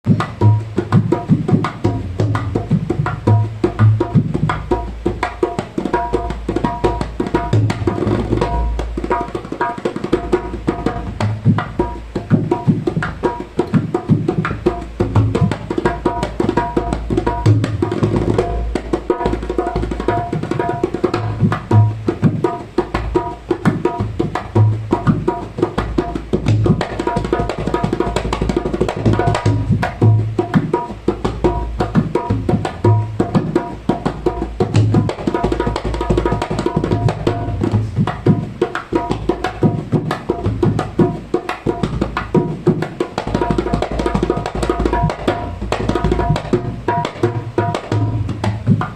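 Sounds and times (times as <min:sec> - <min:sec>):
dholak drum rhythm: 0:00.0 - 0:48.9.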